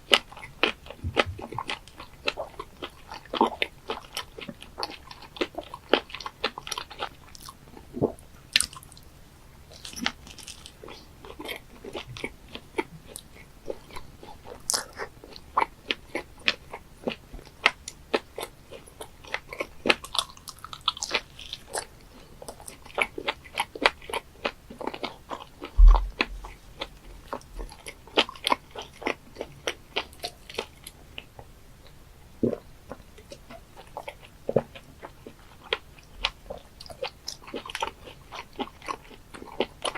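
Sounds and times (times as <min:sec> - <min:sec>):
wet chewing clicks and smacks: 0:00.0 - 0:09.1, 0:09.7 - 0:39.9
low thump: 0:01.0 - 0:01.6, 0:25.8 - 0:26.6.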